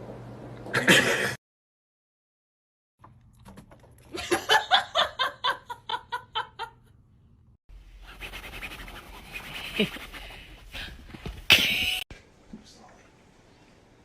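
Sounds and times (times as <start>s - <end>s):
person laughing: 11.5s - 12.0s.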